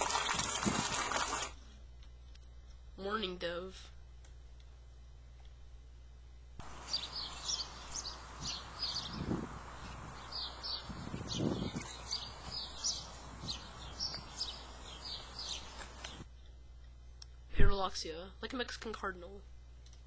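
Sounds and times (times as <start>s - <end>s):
outdoor background noise: 0.0s - 20.0s
small birds chirping: 6.6s - 16.3s.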